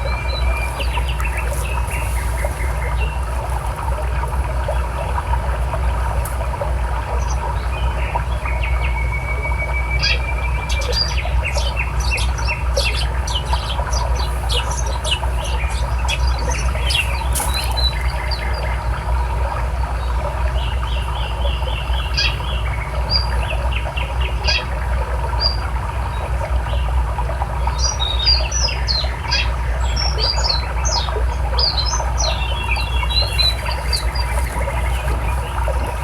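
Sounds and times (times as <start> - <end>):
small birds chirping: 0.0 - 27.0, 27.6 - 36.0
river rushing: 32.3 - 36.0.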